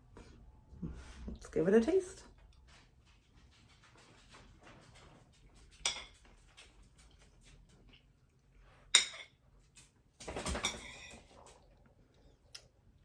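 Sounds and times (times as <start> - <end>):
metal utensil clinking on plate: 5.8 - 6.2, 9.0 - 9.4, 10.5 - 11.3.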